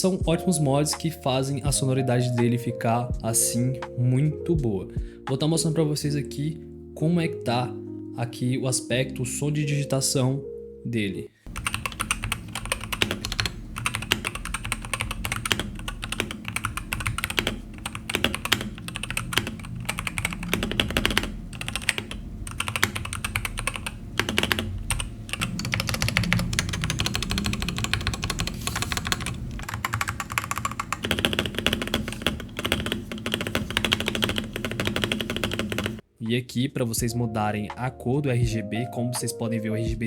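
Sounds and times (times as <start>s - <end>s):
typing on a keyboard: 11.5s - 36.0s.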